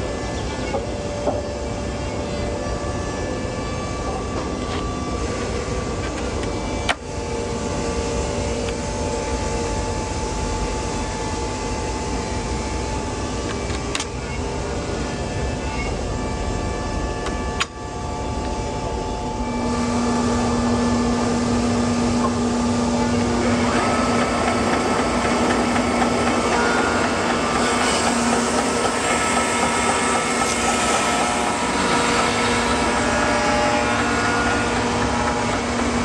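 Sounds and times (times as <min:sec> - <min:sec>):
sawmill cutting a log: 0:23.0 - 0:36.0.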